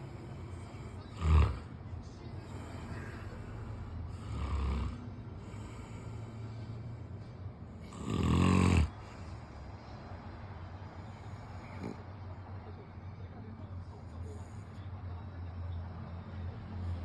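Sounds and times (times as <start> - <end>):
person snoring: 0.0 - 1.8, 2.4 - 6.8, 7.7 - 9.4.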